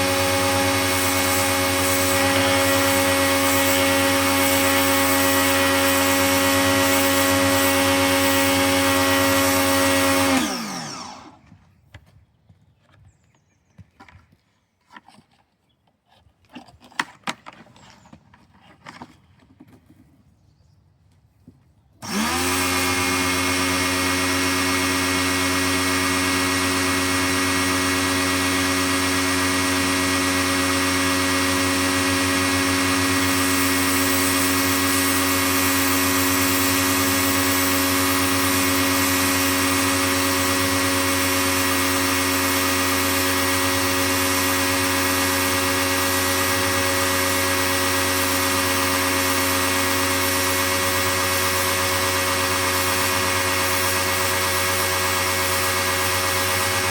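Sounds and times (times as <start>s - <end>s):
pressure washer hiss: 0.0s - 9.8s, 33.0s - 43.4s, 44.1s - 56.9s
pressure washer motor and pump hum: 0.0s - 11.4s, 22.0s - 56.9s.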